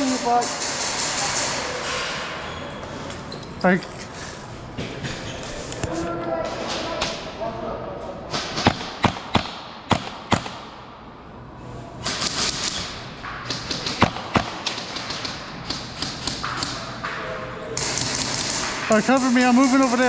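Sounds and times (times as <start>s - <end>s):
airsoft gunfire cracks: 8.3s - 10.8s, 13.5s - 16.6s.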